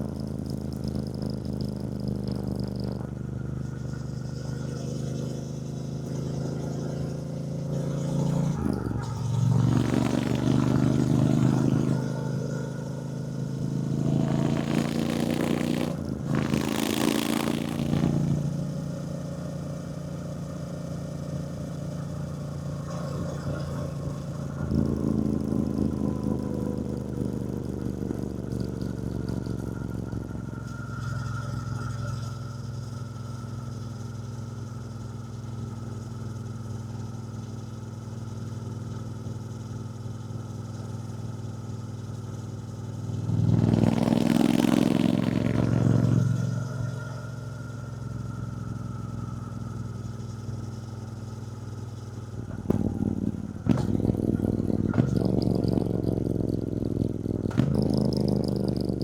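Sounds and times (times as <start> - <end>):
motorcycle engine running: 0.0 - 59.0
sharp clicks and knocks: 52.4 - 56.4, 57.1 - 58.4.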